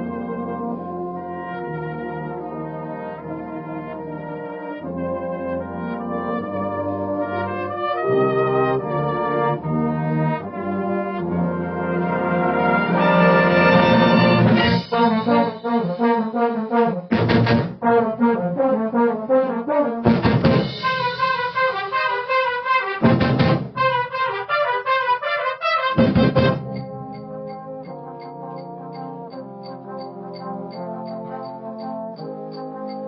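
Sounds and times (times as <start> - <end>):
brass band playing: 0.0 - 33.0
percussion strokes: 13.9 - 17.8, 20.1 - 24.0, 26.0 - 33.0.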